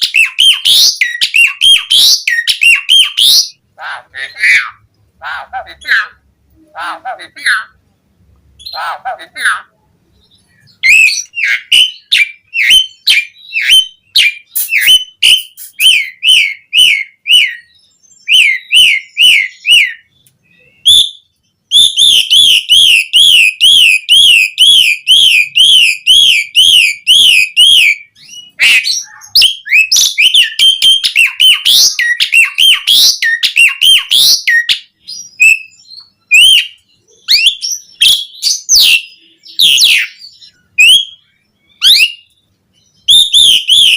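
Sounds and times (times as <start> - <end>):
starling singing whistled phrases: 0.0 - 3.6, 10.3 - 43.9
bird chattering: 0.0 - 7.8, 8.6 - 20.1.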